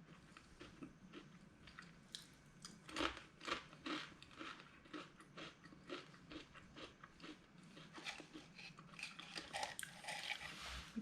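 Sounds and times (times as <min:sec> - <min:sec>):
person chewing crunchy chips: 0:02.6 - 0:10.6.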